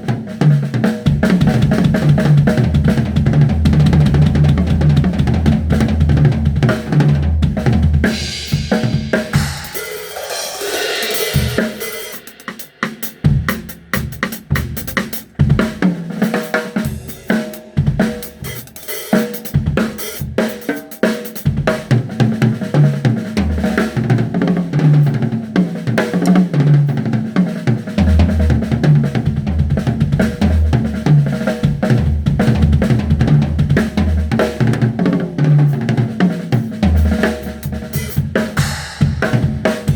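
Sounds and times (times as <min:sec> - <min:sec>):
fast sharp drum strikes: 0:00.0 - 0:39.9
bass drum thumps: 0:01.1 - 0:09.8, 0:28.0 - 0:35.0, 0:36.6 - 0:39.9.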